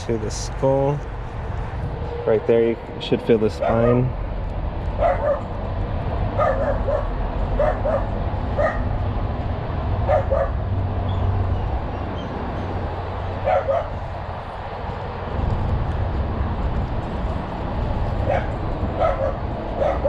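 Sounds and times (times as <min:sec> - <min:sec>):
dog yipping: 0:03.6 - 0:04.0, 0:05.0 - 0:05.5, 0:06.4 - 0:08.9, 0:10.1 - 0:11.3, 0:13.4 - 0:14.0, 0:18.2 - 0:20.0.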